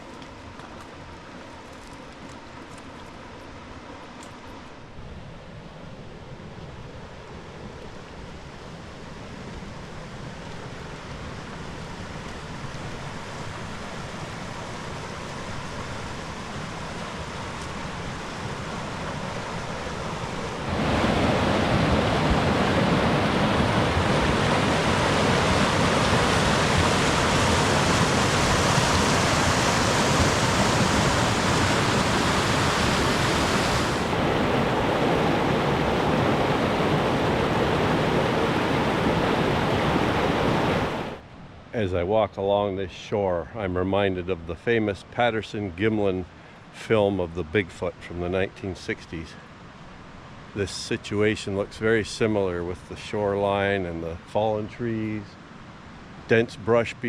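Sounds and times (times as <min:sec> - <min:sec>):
waterfall rushing: 0:19.7 - 0:41.2.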